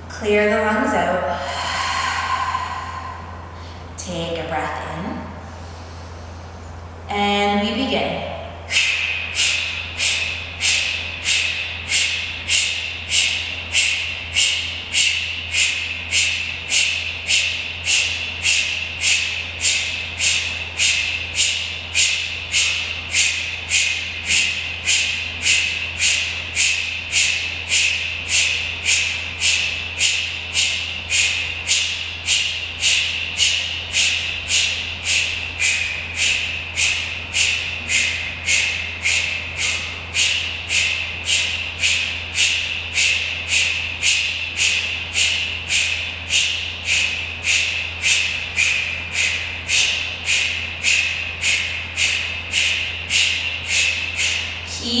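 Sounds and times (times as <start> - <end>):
person forcefully exhaling: 1.3 - 4.0.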